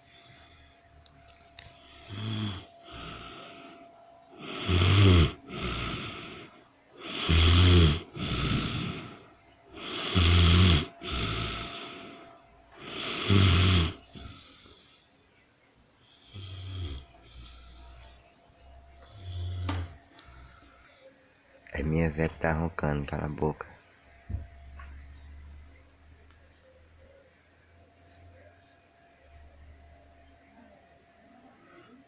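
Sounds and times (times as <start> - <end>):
woman snoring: 1.8 - 14.8, 16.2 - 18.2, 19.0 - 20.6
breathy out-breath: 1.8 - 15.2.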